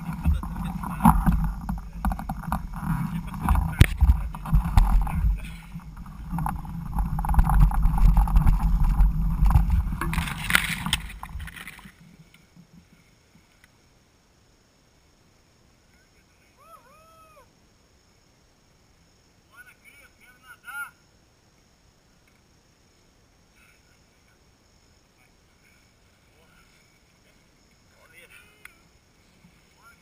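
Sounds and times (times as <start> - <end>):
bike rumble and rattles: 0.0 - 13.0
wind on microphone: 0.0 - 13.0
faint arching call: 15.9 - 17.6.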